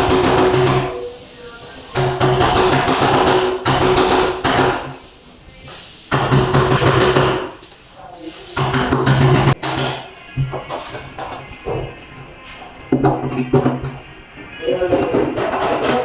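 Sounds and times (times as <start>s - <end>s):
rapid hammering: 0.0s - 1.1s, 1.8s - 5.1s, 6.1s - 7.6s, 8.5s - 12.0s, 14.8s - 16.0s.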